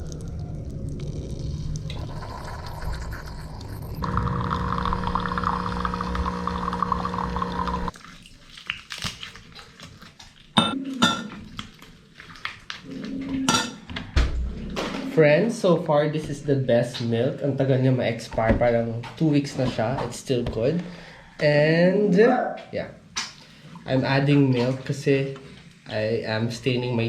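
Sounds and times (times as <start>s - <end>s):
appliance hum with hiss: 4.0s - 7.9s.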